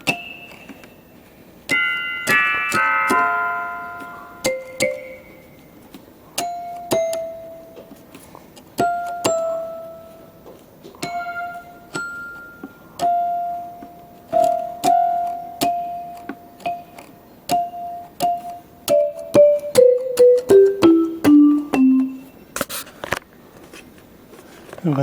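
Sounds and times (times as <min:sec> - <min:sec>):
electronic keyboard single notes: 0:00.0 - 0:05.8, 0:08.8 - 0:22.5.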